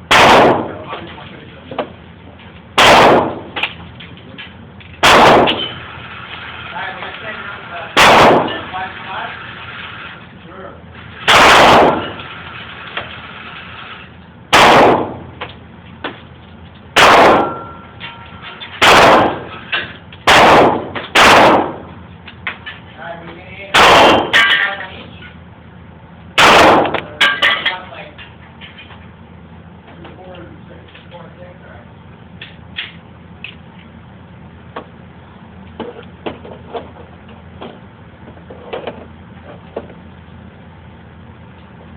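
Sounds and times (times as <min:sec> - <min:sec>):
steady low rumble: 0:00.0 - 0:41.9
pistol gunshots: 0:00.1 - 0:00.8, 0:02.8 - 0:03.7, 0:05.0 - 0:05.8, 0:08.0 - 0:08.7, 0:11.2 - 0:12.2, 0:14.5 - 0:15.3, 0:17.0 - 0:17.8, 0:18.8 - 0:19.6, 0:20.2 - 0:21.9, 0:23.7 - 0:24.5, 0:26.4 - 0:27.2.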